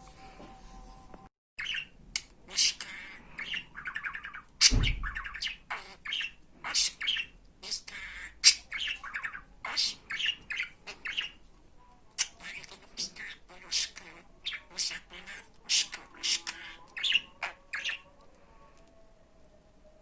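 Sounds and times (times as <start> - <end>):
budgerigar chattering: 1.6 - 11.4, 12.2 - 18.1
loud thump: 4.7 - 5.2.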